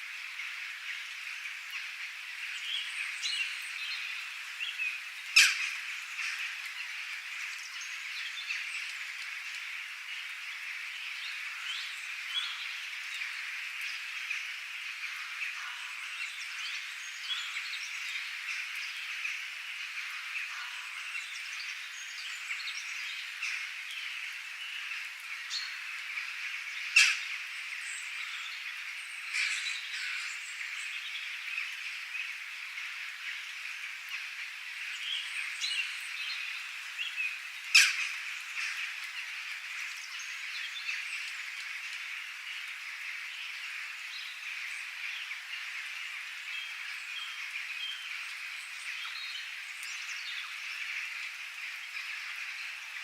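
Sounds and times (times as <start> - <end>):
chorus of bird calls: 0.2 - 53.0
loud sharp bird calls: 25.6 - 31.0.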